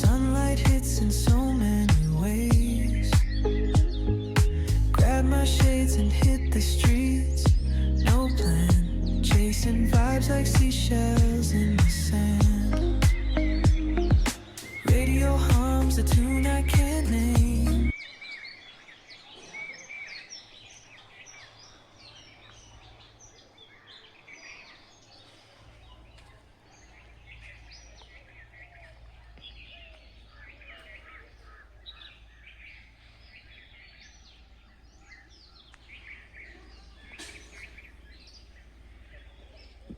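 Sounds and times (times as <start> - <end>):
low steady hum: 0.0 - 17.9
small birds chirping and twittering: 0.0 - 39.9.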